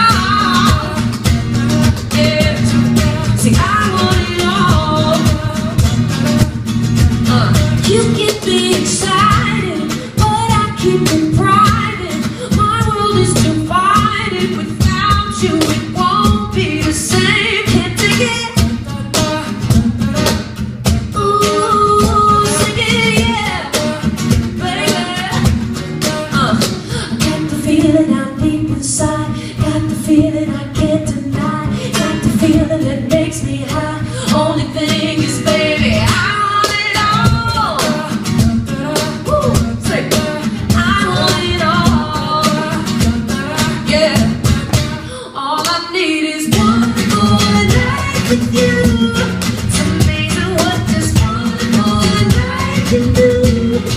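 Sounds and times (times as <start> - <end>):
strummed acoustic guitar: 0.0 - 53.9
woman singing: 0.0 - 53.9.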